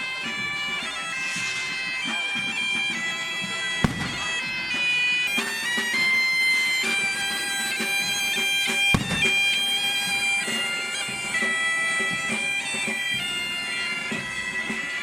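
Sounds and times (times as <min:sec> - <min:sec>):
bagpipe playing a tune: 0:00.0 - 0:15.0
sharp thump: 0:03.8 - 0:04.4.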